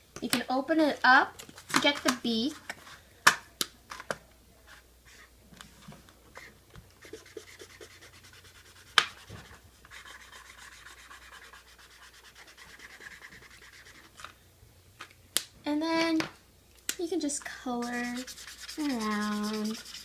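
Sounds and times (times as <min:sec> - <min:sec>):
scribbling on paper plate: 0:06.4 - 0:14.2, 0:17.5 - 0:20.0.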